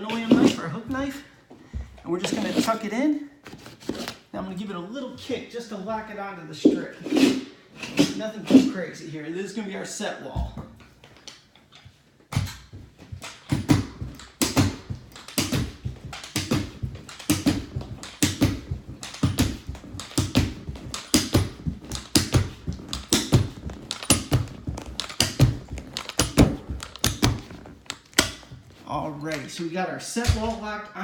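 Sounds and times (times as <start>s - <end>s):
carpet scraping: 0.0s - 1.2s, 1.8s - 4.3s, 10.6s - 29.6s
knee kicker dull thuds: 12.3s - 28.8s.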